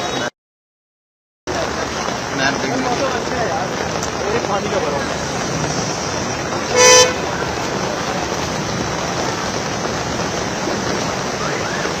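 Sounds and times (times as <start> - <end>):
traffic on wet road: 0.0 - 0.3, 1.5 - 12.0
heavy rain hiss: 1.5 - 12.0
vehicle horn toot: 6.7 - 7.3.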